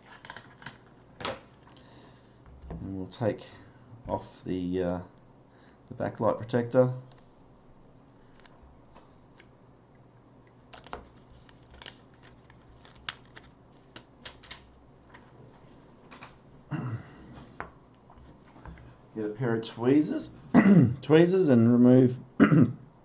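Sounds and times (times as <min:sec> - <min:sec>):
protective film peeling clicks: 0:08.2 - 0:08.6, 0:10.5 - 0:14.7.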